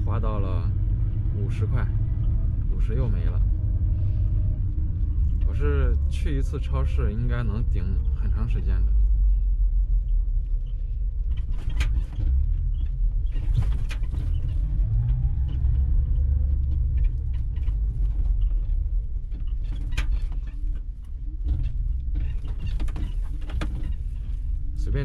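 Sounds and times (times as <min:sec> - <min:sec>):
wind and road noise: 0:00.0 - 0:25.0
clicks and rattles: 0:11.2 - 0:24.8.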